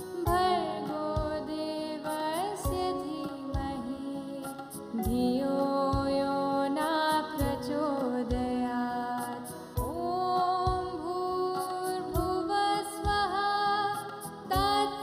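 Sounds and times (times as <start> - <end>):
low drum beat: 6.0 - 6.3, 9.8 - 11.2, 12.2 - 13.4.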